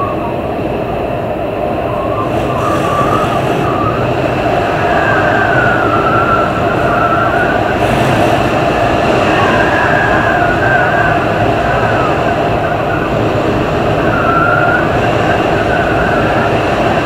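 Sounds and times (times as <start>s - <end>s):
storm-force wind blowing: 0.0s - 17.0s
wavering high whistle: 1.8s - 12.2s.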